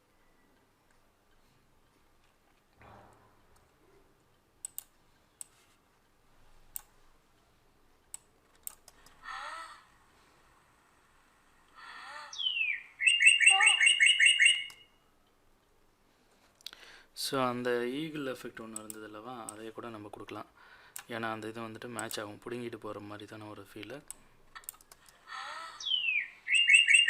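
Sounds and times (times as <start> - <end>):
sharp clicks: 2.2 - 5.6, 6.7 - 6.9, 8.0 - 9.2, 18.7 - 19.6, 20.9 - 21.1, 24.0 - 25.2
falling bird calls: 11.8 - 14.9, 25.5 - 27.0
high repeated bird chirps: 12.3 - 15.0, 25.8 - 27.0.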